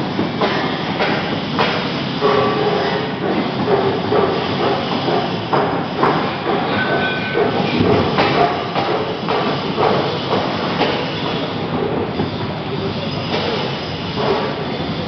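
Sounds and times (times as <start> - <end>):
mill machinery clattering: 0.0 - 15.0
machinery knocks: 3.2 - 11.0.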